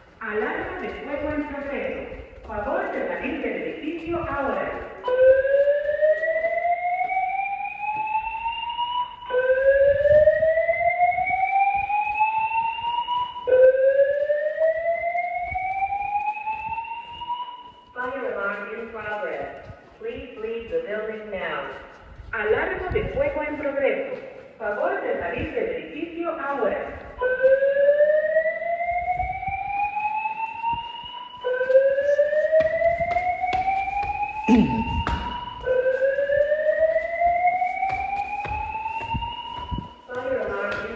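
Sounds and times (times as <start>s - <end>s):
rising whoop alarm tone: 33.0s - 35.9s
slow whoop evacuation tone: 34.4s - 35.4s.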